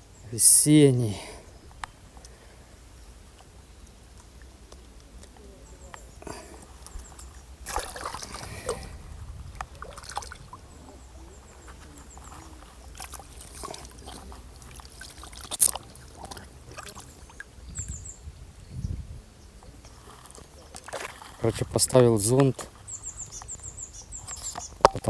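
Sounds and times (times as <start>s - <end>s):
trickling water: 0.0s - 25.0s
small water splashes: 3.2s - 18.0s, 19.7s - 21.8s
tackle clicks and rustles: 3.3s - 17.6s, 19.6s - 25.0s.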